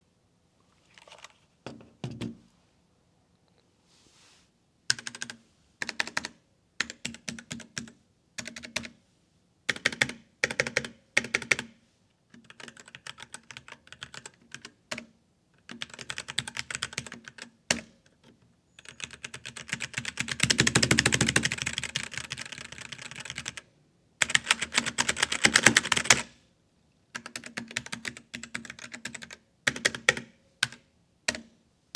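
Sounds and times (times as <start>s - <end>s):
typing on mechanical keyboard: 4.9s - 9.0s, 9.7s - 11.7s, 12.4s - 23.6s, 24.2s - 26.3s, 27.2s - 31.5s.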